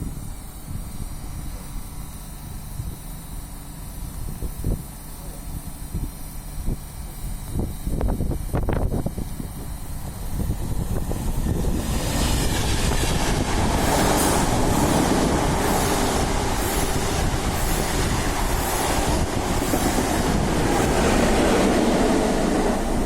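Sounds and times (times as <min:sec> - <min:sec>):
train rolling rumble: 0:08.6 - 0:23.0.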